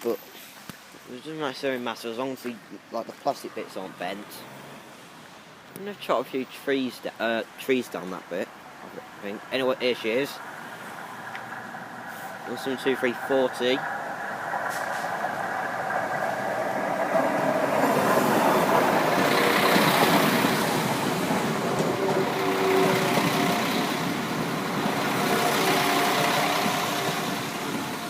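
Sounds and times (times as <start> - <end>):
diesel train passing: 8.4 - 28.0.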